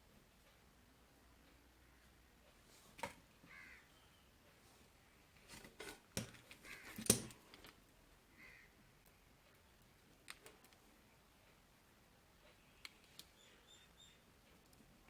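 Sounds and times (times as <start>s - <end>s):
small tools clicking and tapping: 5.5s - 7.8s.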